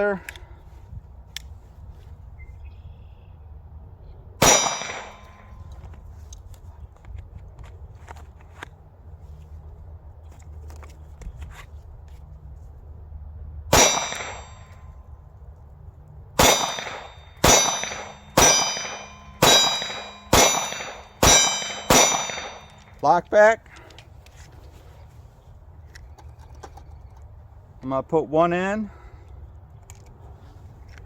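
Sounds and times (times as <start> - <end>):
pistol shots with ringing tail: 4.4 - 5.7, 13.7 - 14.8, 16.4 - 22.9.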